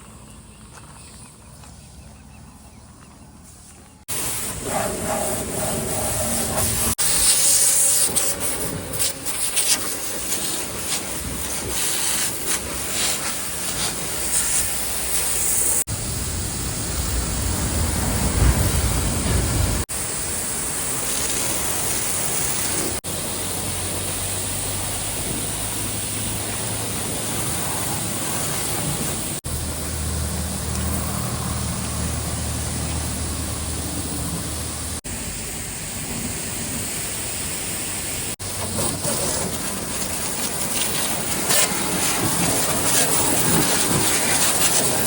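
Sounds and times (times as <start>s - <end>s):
high-pressure water spray hissing: 4.1s - 45.0s
engine hum: 14.2s - 45.0s.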